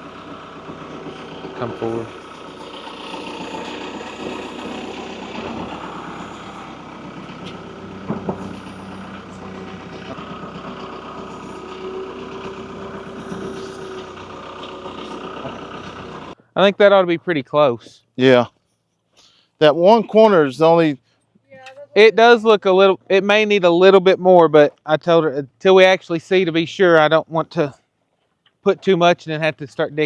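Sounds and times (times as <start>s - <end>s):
tractor engine running: 0.0s - 16.9s.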